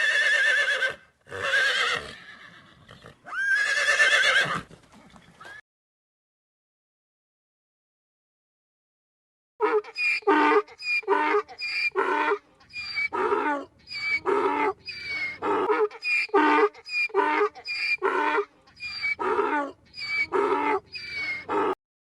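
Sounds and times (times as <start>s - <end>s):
farm animal calling: 9.6s - 21.8s.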